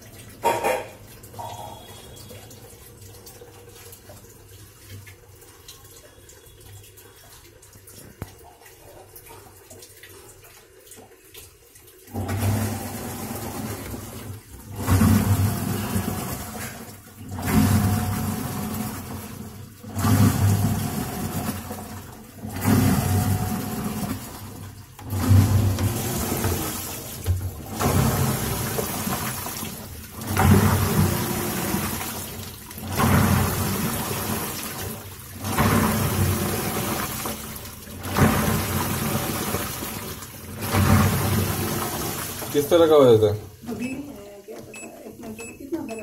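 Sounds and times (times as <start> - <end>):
washing machine agitating: 0.0 - 46.0
water swishing: 12.1 - 43.6.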